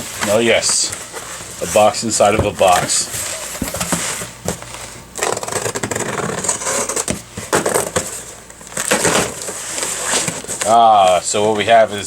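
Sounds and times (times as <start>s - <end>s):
cardboard rustling and crinkling: 0.0s - 12.0s.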